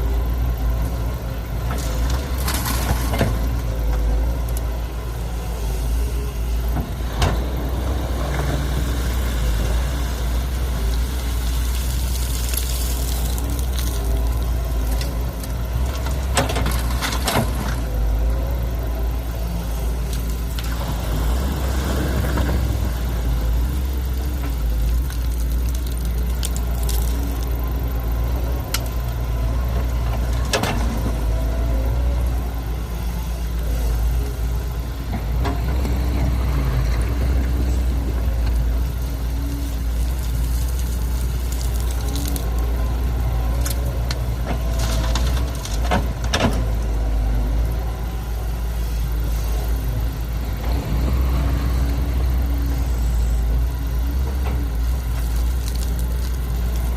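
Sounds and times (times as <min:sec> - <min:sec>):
heavy diesel machinery running: 0:00.0 - 0:56.9.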